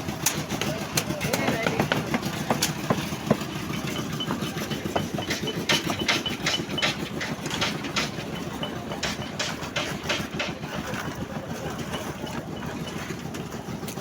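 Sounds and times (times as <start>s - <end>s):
sharp clanks and knocks: 0.0s - 11.2s
engine rumbling: 0.0s - 14.0s.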